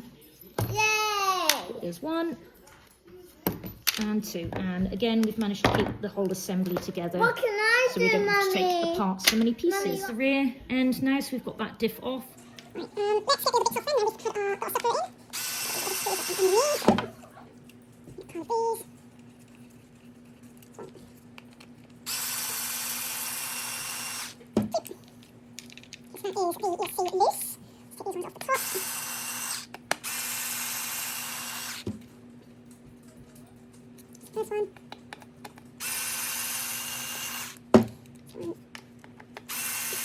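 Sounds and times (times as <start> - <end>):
cordless drill whining: 15.4 - 16.9, 22.1 - 24.4, 28.6 - 31.8, 35.8 - 37.6, 39.5 - 40.0.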